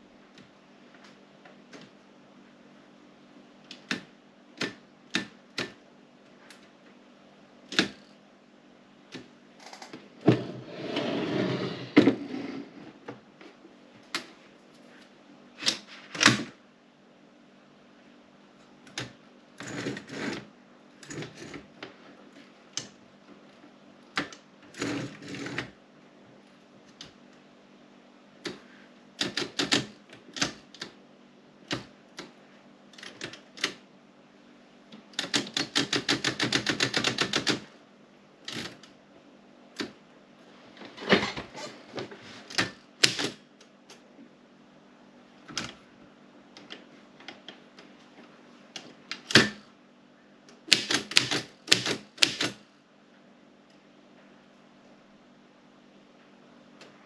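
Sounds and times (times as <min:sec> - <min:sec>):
manual typewriter typing: 0:29.2 - 0:30.9, 0:35.1 - 0:37.7, 0:42.5 - 0:43.4, 0:50.6 - 0:52.6.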